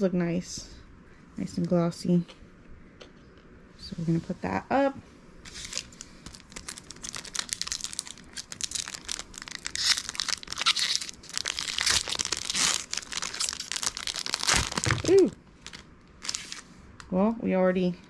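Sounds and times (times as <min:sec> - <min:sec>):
foil wrapper crinkling and tearing: 0:05.5 - 0:16.6.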